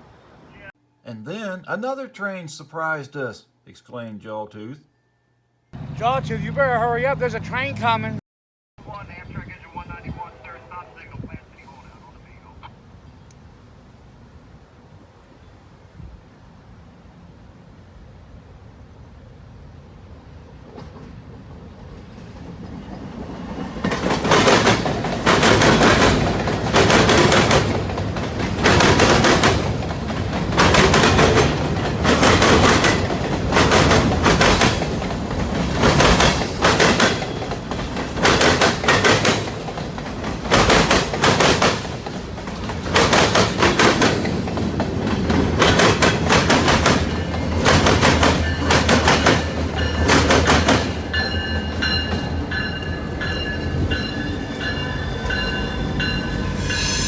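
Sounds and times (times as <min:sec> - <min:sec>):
train wheels clattering over track: 0:20.7 - 0:56.9.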